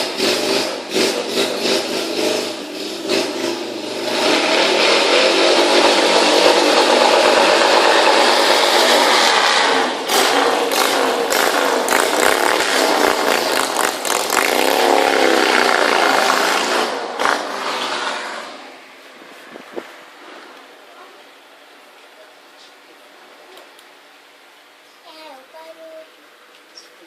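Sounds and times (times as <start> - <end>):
motorcycle engine revving: 0.0 - 20.8
sharp exhaust cracks: 0.0 - 21.1.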